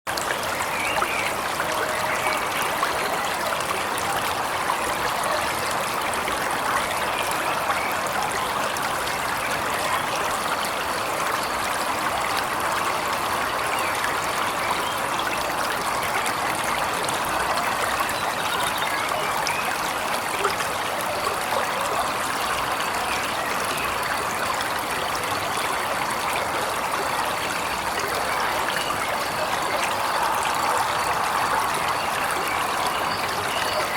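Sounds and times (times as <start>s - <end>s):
waterfall rushing and splashing: 15.2s - 33.9s.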